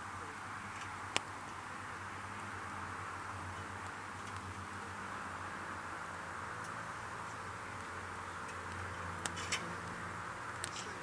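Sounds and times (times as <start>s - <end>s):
campfire crackling: 0.0s - 11.0s
fire pops: 7.8s - 11.0s.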